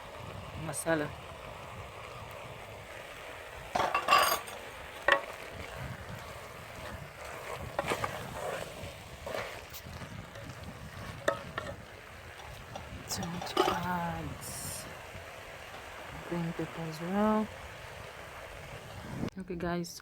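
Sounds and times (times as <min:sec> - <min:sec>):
steady hiss of simmering: 0:00.0 - 0:19.9
spoon knocking and scraping in pot: 0:03.8 - 0:05.7, 0:06.8 - 0:14.1.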